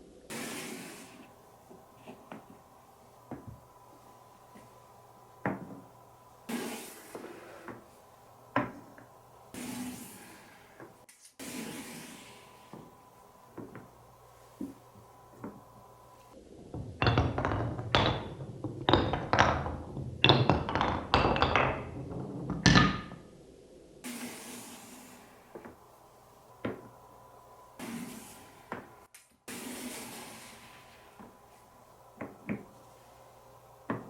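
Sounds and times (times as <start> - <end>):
marbles clacking on wooden blocks: 16.8 - 23.1.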